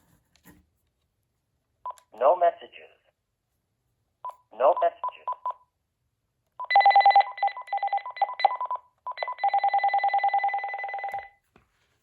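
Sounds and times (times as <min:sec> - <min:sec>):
phone ringer trilling: 0:06.7 - 0:11.3.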